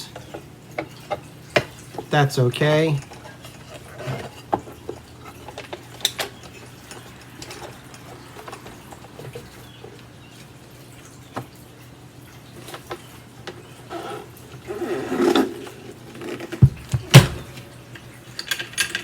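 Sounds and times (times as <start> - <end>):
vacuum cleaner parts clicking: 16.2 - 17.8.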